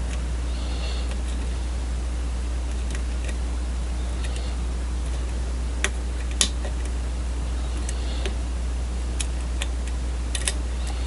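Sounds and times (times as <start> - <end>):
steady low hum: 0.0 - 11.0
lock picking clicks: 10.3 - 10.6.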